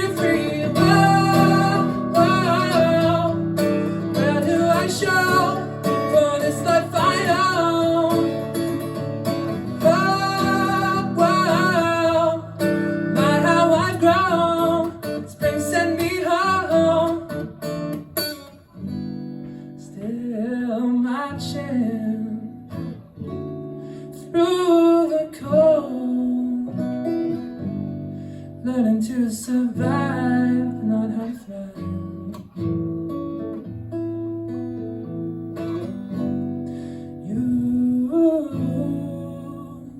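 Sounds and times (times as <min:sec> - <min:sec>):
person singing: 0:00.0 - 0:17.6, 0:37.2 - 0:39.9
guitar playing: 0:00.0 - 0:24.3, 0:25.9 - 0:28.8, 0:29.8 - 0:39.9.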